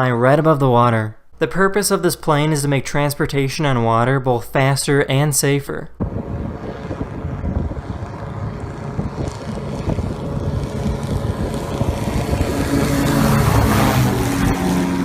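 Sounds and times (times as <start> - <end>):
engine and propeller rumble: 6.0 - 15.0
wind and spray noise: 6.0 - 15.0.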